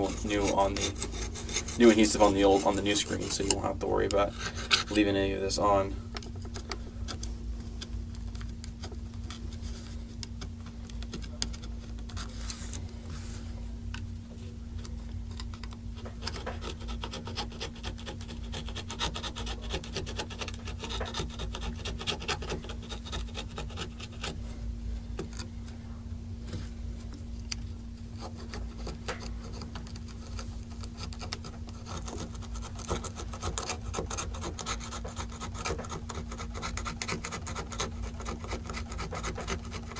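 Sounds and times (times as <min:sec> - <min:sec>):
pick scraping phone frame: 0:00.0 - 0:12.9, 0:28.1 - 0:39.9.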